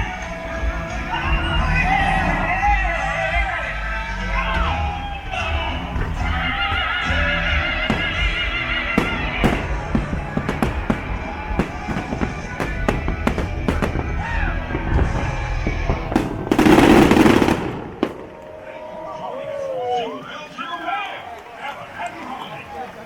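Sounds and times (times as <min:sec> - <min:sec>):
show music: 0:00.0 - 0:18.4
fireworks bangs: 0:05.2 - 0:18.9.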